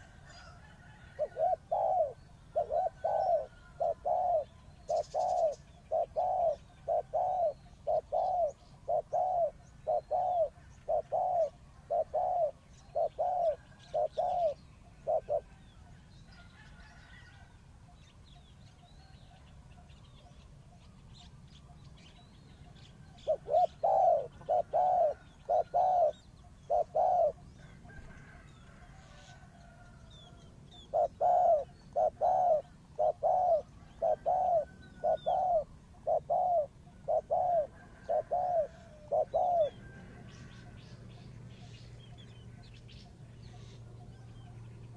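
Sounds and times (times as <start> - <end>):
bird hooting: 0.0 - 15.6, 23.2 - 28.1, 30.3 - 40.8.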